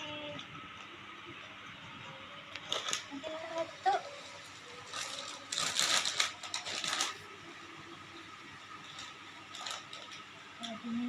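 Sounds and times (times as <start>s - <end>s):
gift packaging rustling: 2.6s - 7.4s, 8.8s - 10.3s.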